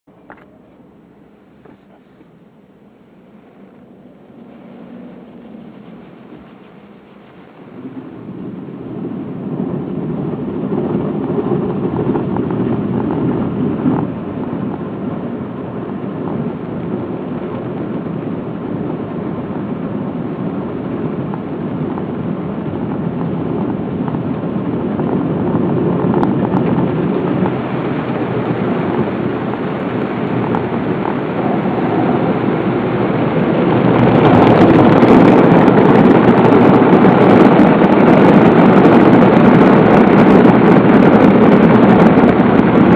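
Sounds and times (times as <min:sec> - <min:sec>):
car wash machine rushing: 0:03.2 - 0:42.9.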